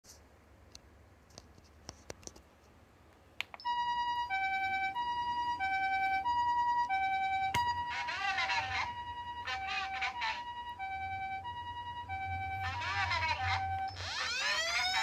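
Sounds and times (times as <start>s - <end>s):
two-tone ambulance siren: 3.6s - 15.0s.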